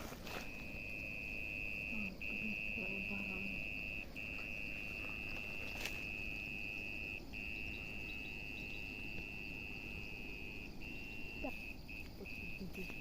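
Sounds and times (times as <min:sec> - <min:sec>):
insect singing high note: 0:00.3 - 0:13.0.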